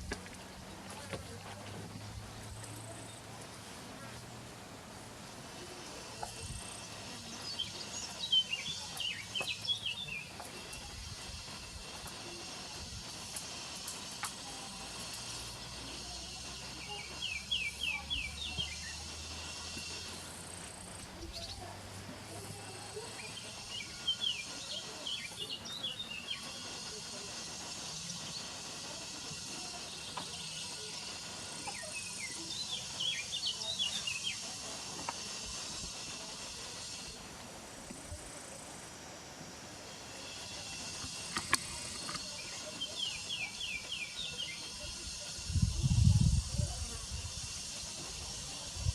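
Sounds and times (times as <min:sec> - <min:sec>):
insects buzzing: 0:00.0 - 0:48.9
songbird singing: 0:05.5 - 0:37.3, 0:39.8 - 0:48.9
bird chirping: 0:07.3 - 0:10.4, 0:16.7 - 0:20.0
high-pitched insect buzz: 0:10.3 - 0:21.7.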